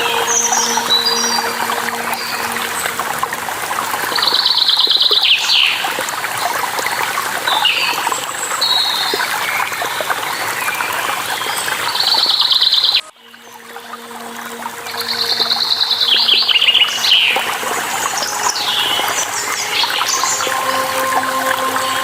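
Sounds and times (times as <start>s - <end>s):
waterfall rushing: 0.0s - 8.4s, 13.2s - 22.0s.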